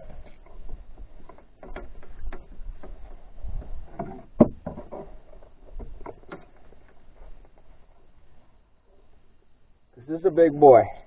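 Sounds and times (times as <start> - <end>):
knocks in a canoe: 0.4 - 7.4.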